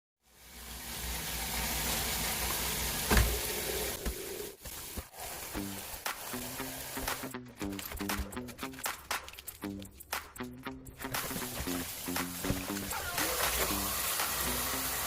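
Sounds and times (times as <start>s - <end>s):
food sizzling in a hot pan: 0.3s - 7.3s, 11.2s - 15.0s.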